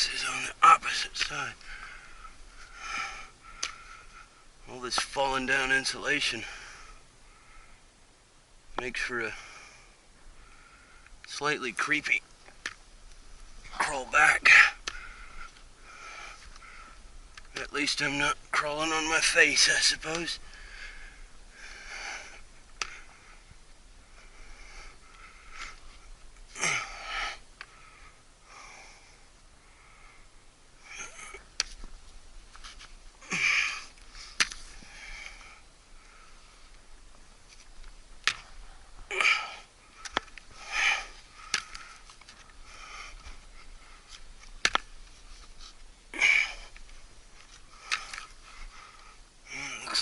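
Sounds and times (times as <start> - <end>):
person breathing hard: 1.6 - 4.5, 20.4 - 31.5, 33.2 - 36.8, 38.3 - 44.5, 46.1 - 46.8, 47.4 - 50.0
rustle of crawling: 30.9 - 50.0.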